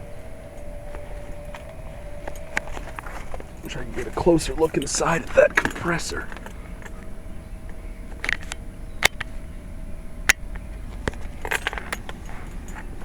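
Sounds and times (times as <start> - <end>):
low steady rumble: 0.0 - 13.0
sharp clicks and light knocks: 0.6 - 7.1.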